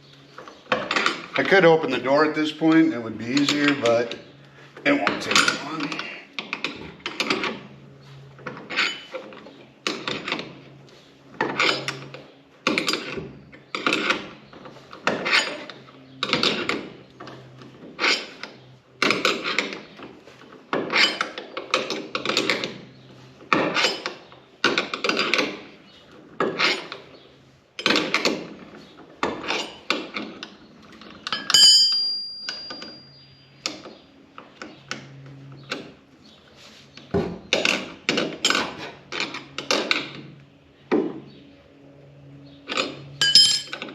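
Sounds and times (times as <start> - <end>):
high metallic squeak: 8.7 - 9.2
metal latch clinking and ratcheting: 29.2 - 33.9, 42.7 - 43.9.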